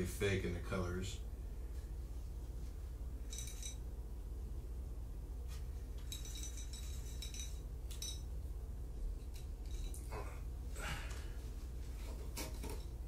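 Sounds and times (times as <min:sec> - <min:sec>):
steady low hum: 0:00.0 - 0:13.0
glass clinking: 0:03.2 - 0:03.8, 0:06.0 - 0:08.4.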